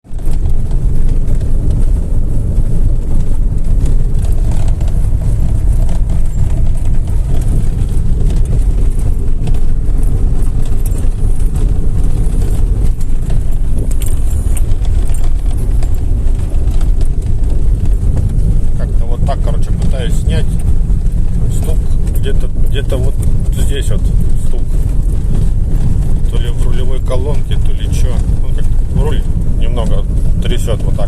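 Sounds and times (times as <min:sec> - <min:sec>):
road and engine rumble in car: 0:00.0 - 0:31.0.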